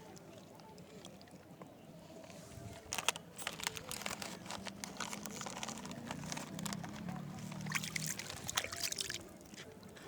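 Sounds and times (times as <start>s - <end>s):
river water splashing at bank: 4.0s - 10.0s.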